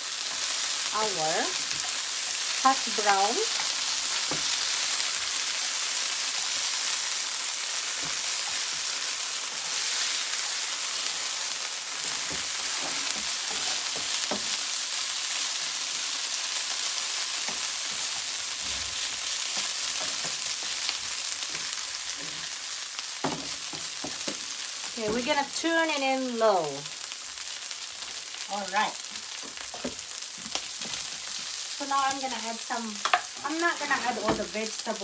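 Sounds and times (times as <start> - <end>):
potatoes sizzling in a pan: 0.0 - 35.0
utensil tapping a pan: 33.0 - 33.3.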